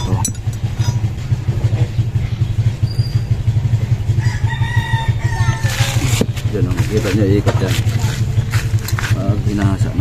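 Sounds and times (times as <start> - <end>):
low motor drone: 0.0 - 10.0
rooster crowing: 4.1 - 6.2.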